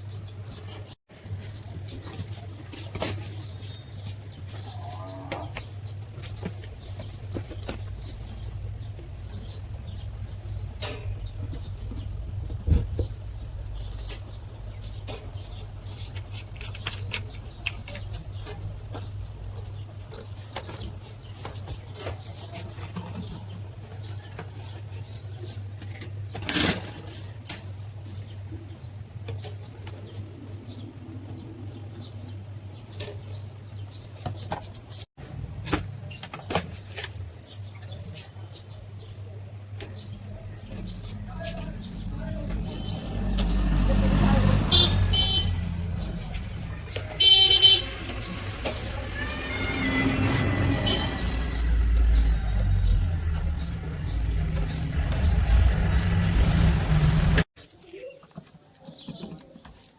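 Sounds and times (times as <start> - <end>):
metal fan parts clicking: 0.2 - 27.8
steady low hum: 5.8 - 21.6.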